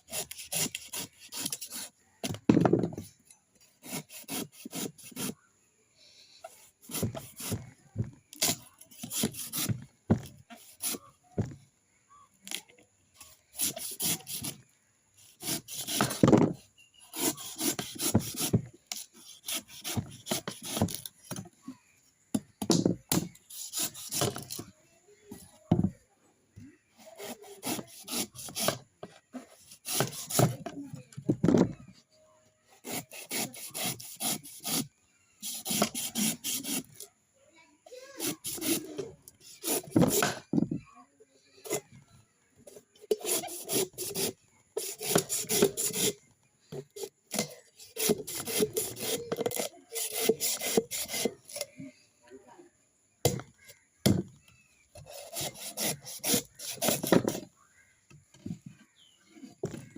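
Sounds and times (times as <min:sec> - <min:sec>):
coconut being scraped: 0:00.0 - 0:02.2, 0:03.7 - 0:05.4, 0:06.5 - 0:07.7, 0:08.3 - 0:11.6, 0:13.3 - 0:21.4, 0:23.1 - 0:24.6, 0:26.9 - 0:30.7, 0:32.8 - 0:37.0, 0:38.0 - 0:40.5, 0:41.6 - 0:41.9, 0:42.7 - 0:51.8, 0:55.0 - 0:57.8.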